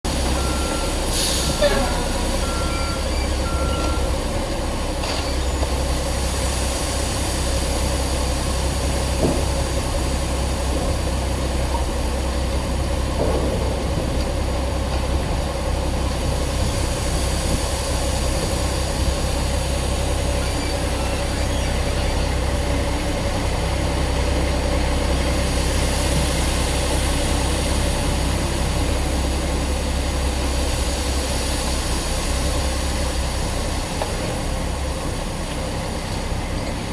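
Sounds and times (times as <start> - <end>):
low engine rumble: 0.0 - 36.9
constant machine whine: 9.1 - 36.9.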